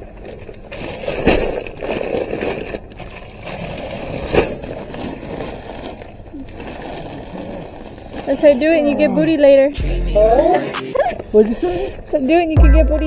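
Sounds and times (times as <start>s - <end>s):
sacks scraping and rustling: 0.0s - 9.8s.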